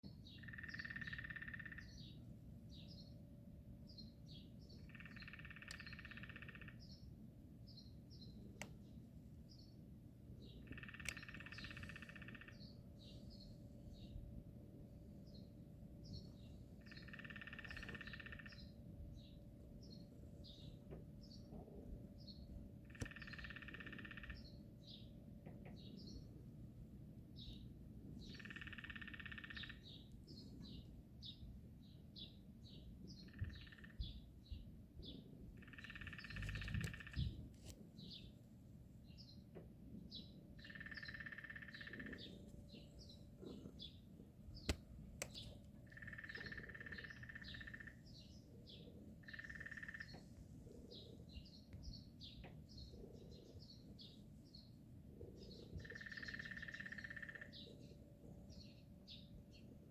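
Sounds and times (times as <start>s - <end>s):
small birds chirping: 0.1s - 26.5s, 27.3s - 59.9s
woodpecker drumming bursts: 45.3s - 47.9s.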